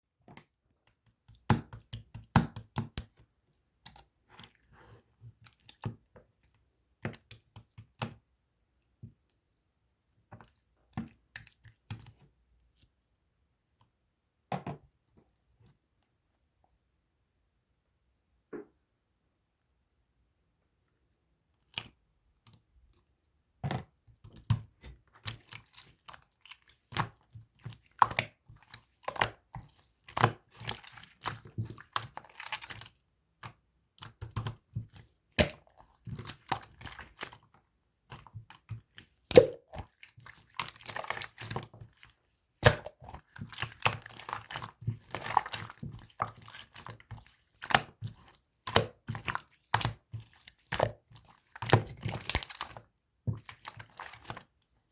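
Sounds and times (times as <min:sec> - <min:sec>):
slime popping and crackling: 0:51.6 - 0:52.8.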